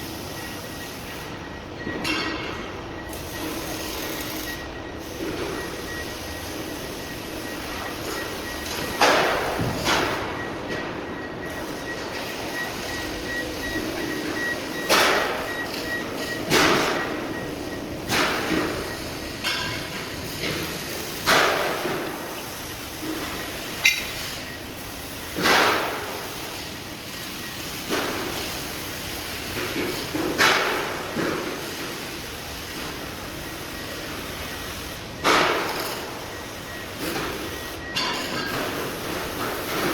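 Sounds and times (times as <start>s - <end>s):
workshop machinery din: 0.0s - 39.9s
loud metal bangs and clanks: 1.8s - 3.0s.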